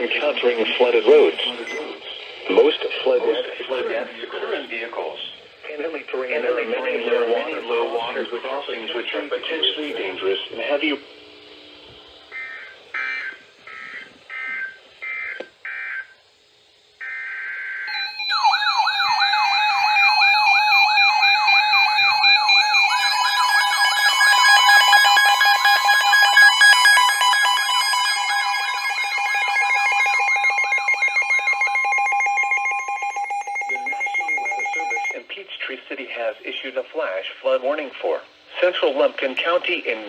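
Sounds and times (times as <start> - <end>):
steady alarm tone: 0.0 - 35.3
short digital data bursts: 12.3 - 35.3
warbling siren-like alert tone: 17.0 - 35.2.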